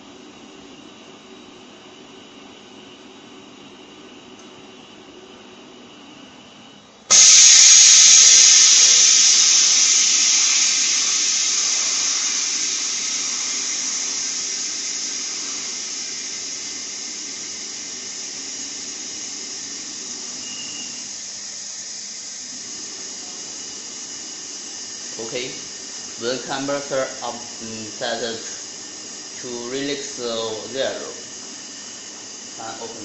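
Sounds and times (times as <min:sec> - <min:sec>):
compressed air hissing: 0:07.1 - 0:33.0.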